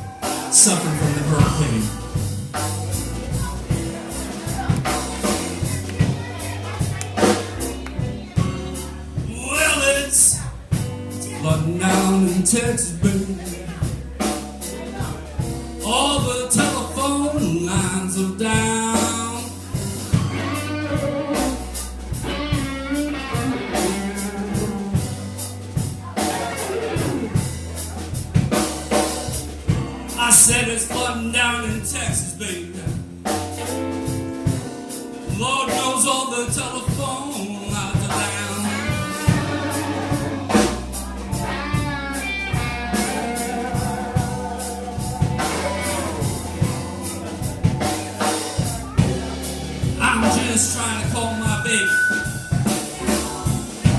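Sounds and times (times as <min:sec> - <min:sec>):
person singing: 0:00.0 - 0:02.2, 0:06.9 - 0:14.0, 0:15.8 - 0:25.3, 0:35.3 - 0:53.9
bass guitar: 0:00.0 - 0:53.9
blues band playing: 0:00.0 - 0:53.9
drum kit: 0:00.0 - 0:53.9
electric guitar fills: 0:00.0 - 0:53.9
keyboards: 0:00.0 - 0:53.9.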